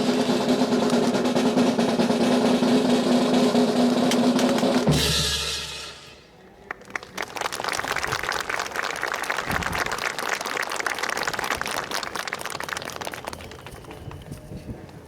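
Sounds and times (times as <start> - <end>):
audience applauding: 6.6 - 14.2.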